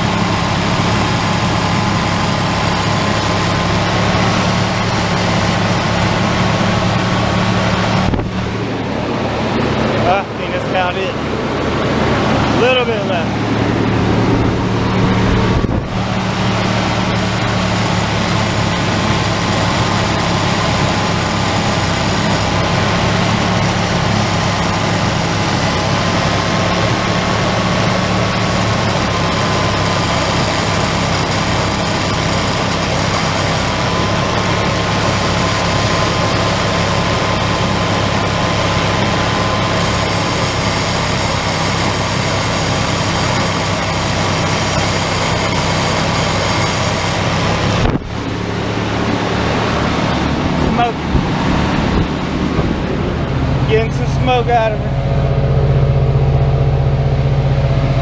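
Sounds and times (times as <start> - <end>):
engine running at raised idle: 0.0 - 58.0
thin steady whine: 0.0 - 58.0.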